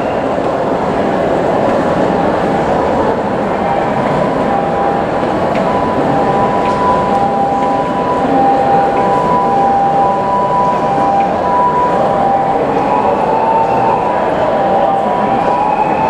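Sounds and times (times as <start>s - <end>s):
crowd noise: 0.0s - 16.0s
traffic noise: 0.0s - 16.0s
two-tone ambulance siren: 3.6s - 16.0s.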